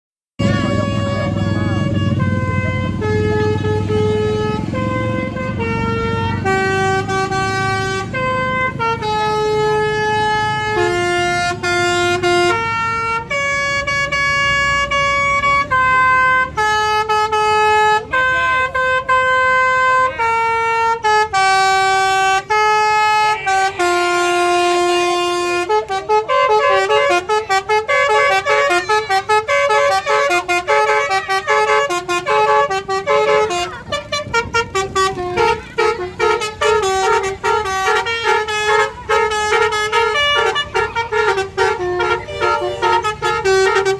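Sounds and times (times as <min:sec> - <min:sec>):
bus engine rumbling: 0:00.4 - 0:43.9
multi-tone bus horns melody: 0:00.4 - 0:43.9.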